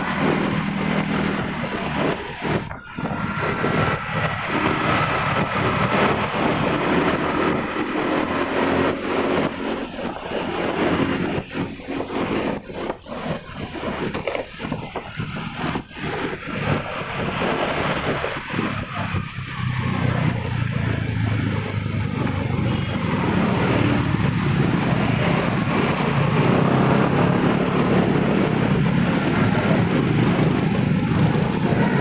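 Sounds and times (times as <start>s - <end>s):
road and traffic noise: 0.0s - 32.0s
wind buffeting microphone: 0.0s - 32.0s.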